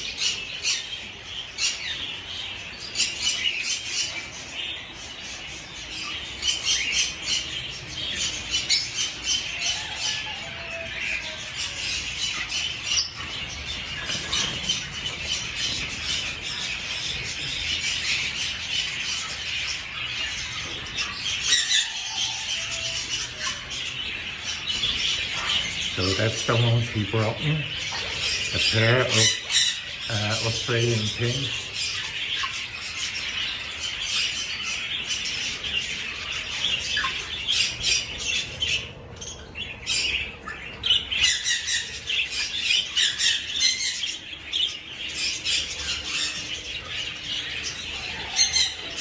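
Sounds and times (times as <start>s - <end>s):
birds chirping and squawking: 0.0s - 49.0s.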